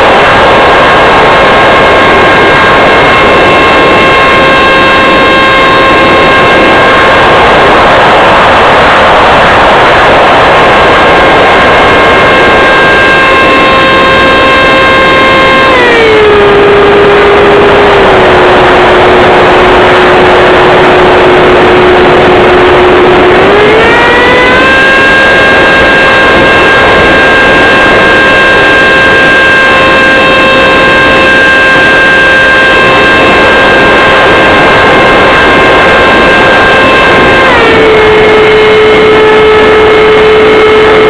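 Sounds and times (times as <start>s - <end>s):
rush of air: 0.0s - 15.0s
electric ducted fan whine: 0.0s - 41.0s.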